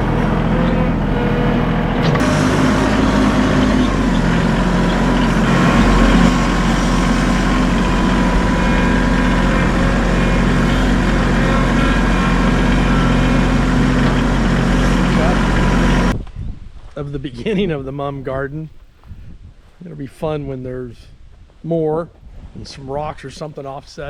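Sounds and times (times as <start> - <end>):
heavy machine engine running: 0.0 - 16.2.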